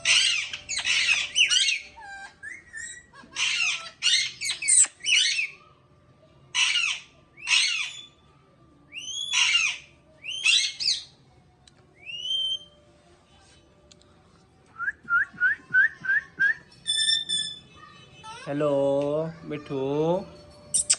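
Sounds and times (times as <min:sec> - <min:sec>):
parrot squawking: 0:00.0 - 0:05.6, 0:06.5 - 0:08.1, 0:09.0 - 0:11.1, 0:16.8 - 0:18.6.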